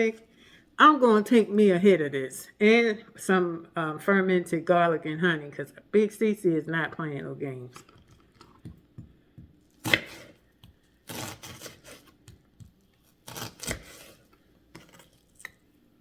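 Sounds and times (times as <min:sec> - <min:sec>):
knife chopping on cutting board: 0:08.6 - 0:15.1.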